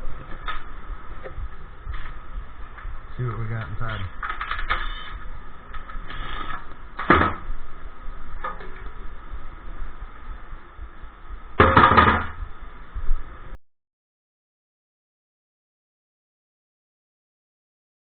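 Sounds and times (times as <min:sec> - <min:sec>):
shop background noise: 0:01.9 - 0:07.5.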